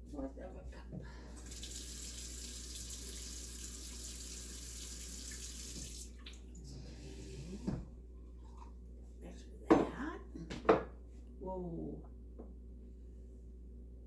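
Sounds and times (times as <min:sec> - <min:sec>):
tap water running into cup: 0:01.4 - 0:06.5.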